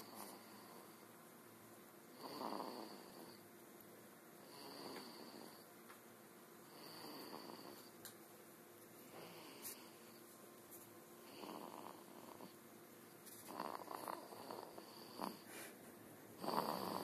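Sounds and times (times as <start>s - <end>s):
soft slow snoring with whistle: 2.2s - 3.4s, 4.5s - 5.6s, 6.7s - 7.9s, 11.3s - 12.6s, 13.5s - 15.7s, 16.4s - 17.0s.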